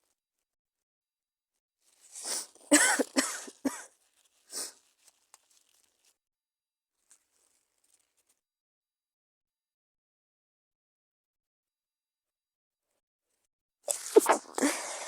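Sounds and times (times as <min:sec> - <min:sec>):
woman coughing: 0:02.7 - 0:03.9
breathing in: 0:13.9 - 0:15.0.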